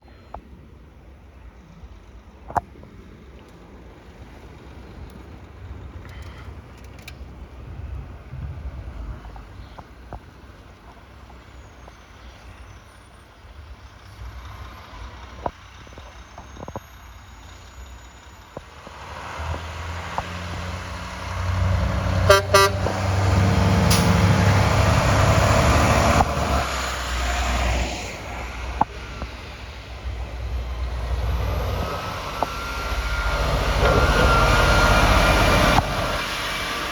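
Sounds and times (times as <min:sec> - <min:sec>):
tyre and road noise: 0:00.1 - 0:36.9
heavy truck engine passing: 0:12.1 - 0:36.9
truck horn toots: 0:21.5 - 0:25.2.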